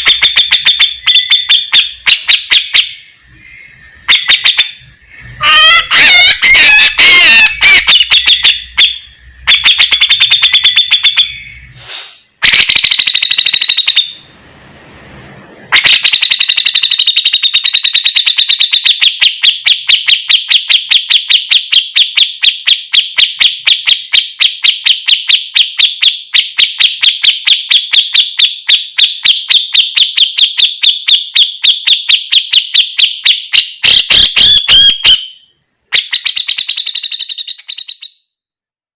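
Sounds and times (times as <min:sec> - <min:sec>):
bulbul singing loudly: 0:00.0 - 0:14.3.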